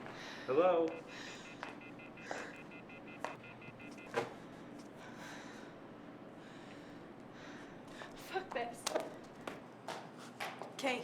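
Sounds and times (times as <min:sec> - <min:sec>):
faint pulsing electronic tone: 0:00.9 - 0:04.1.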